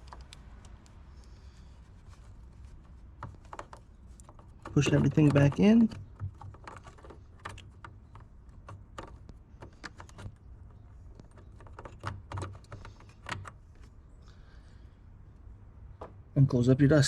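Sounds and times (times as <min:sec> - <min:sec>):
small plastic clicks and knocks: 0:03.2 - 0:13.9.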